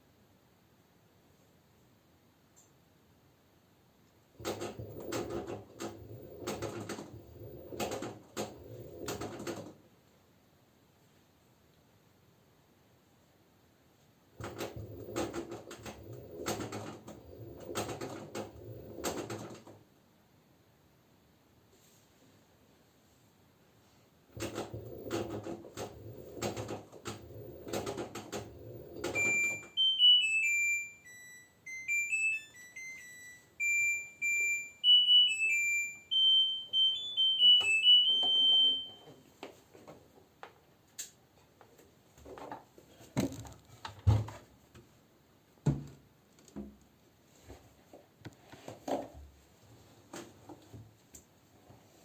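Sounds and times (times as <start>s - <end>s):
washing machine beep melody: 4.4s - 9.2s, 24.6s - 39.2s
clattering noise: 42.3s - 44.4s.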